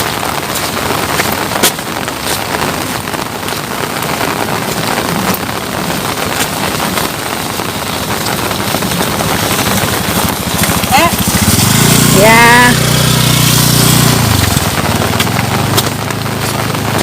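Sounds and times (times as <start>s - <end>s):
raindrops ticking close: 0.0s - 17.0s
steady rain falling: 0.0s - 17.0s.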